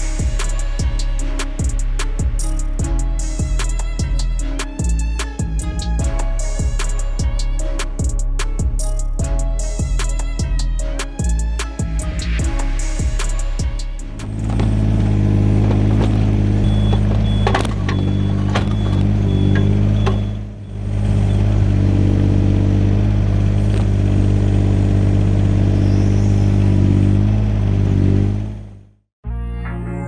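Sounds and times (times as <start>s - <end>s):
excavator diesel engine running: 14.1s - 28.9s
sharp knocks: 14.2s - 20.6s.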